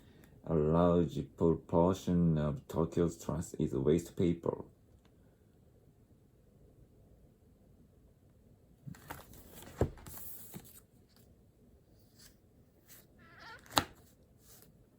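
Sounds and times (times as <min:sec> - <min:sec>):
paper rustling: 0:08.9 - 0:11.3, 0:12.0 - 0:14.8.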